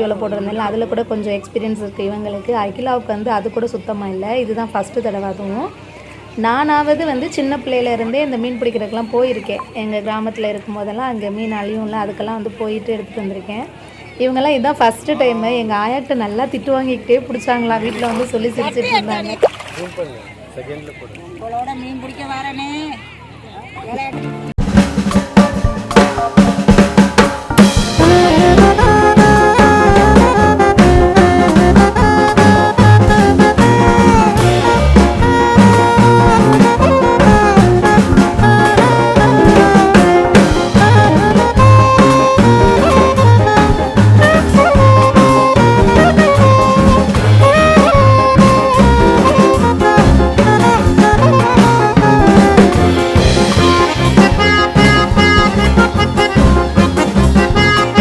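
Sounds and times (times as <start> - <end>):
upbeat tune with drum beat: 24.5 - 58.0.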